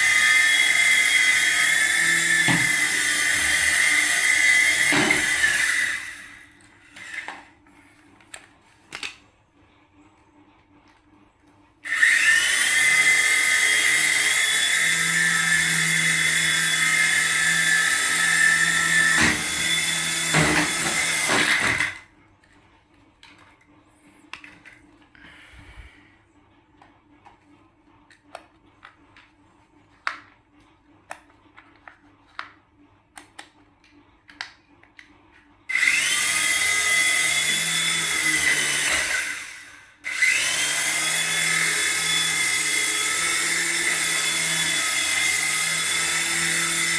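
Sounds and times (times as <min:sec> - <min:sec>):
small electric motor whine: 0:00.0 - 0:07.5, 0:11.9 - 0:22.0, 0:35.7 - 0:46.9.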